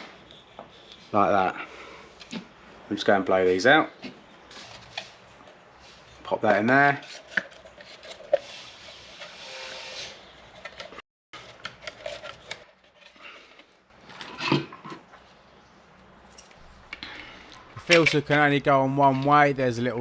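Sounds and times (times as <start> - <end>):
plastic parts clicking and rubbing: 10.5 - 15.0, 16.4 - 18.8
hissy scraping: 16.4 - 20.0.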